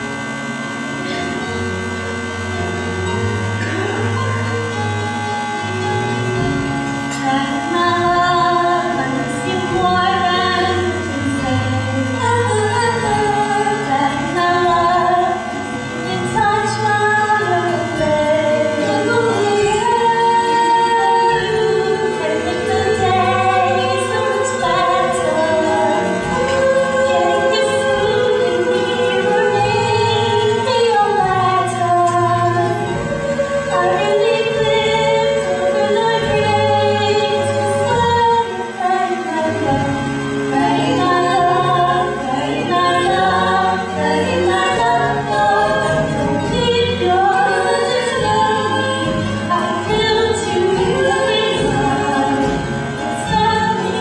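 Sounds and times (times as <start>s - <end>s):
instrumental accompaniment: 0.0s - 54.0s
voices singing: 0.0s - 54.0s.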